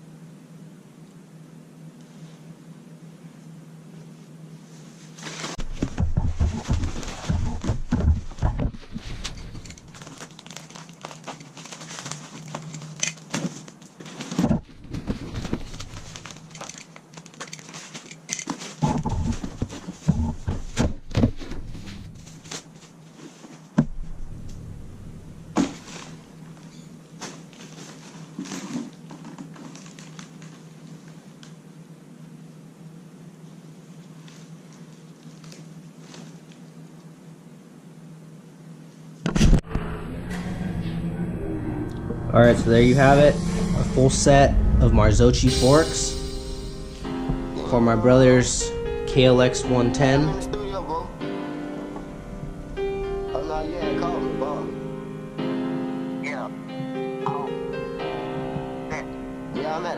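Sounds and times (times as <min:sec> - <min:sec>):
packing material crinkling: 0:09.0 - 0:14.4, 0:15.3 - 0:18.8, 0:27.2 - 0:31.2.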